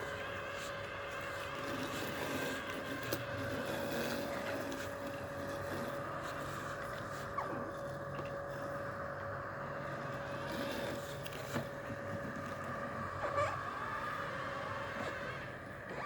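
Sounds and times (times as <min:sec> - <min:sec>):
robotic lawn mower motor hum: 0:00.0 - 0:16.0
wheel squeaking: 0:12.6 - 0:15.2.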